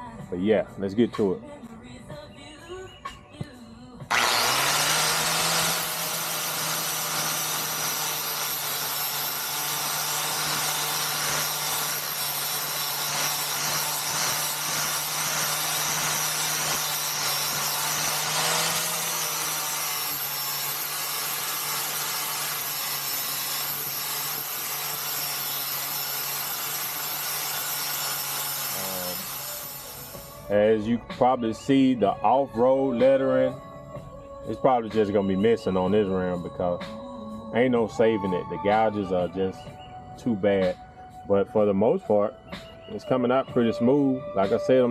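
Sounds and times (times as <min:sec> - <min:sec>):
angle grinder grinding metal: 0:04.1 - 0:30.5.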